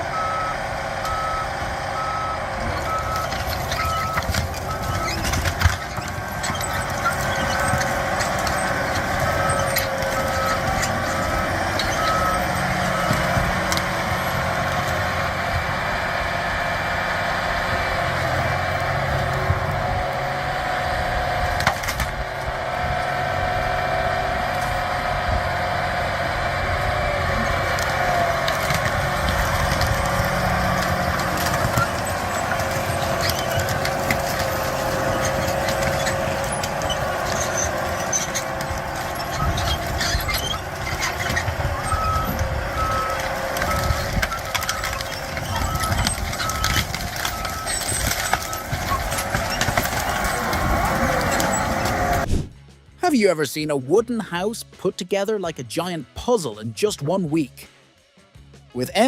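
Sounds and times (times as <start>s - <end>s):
diesel engine running: 0.0s - 57.6s
reversing alarm beeping: 0.1s - 14.5s, 39.2s - 50.6s.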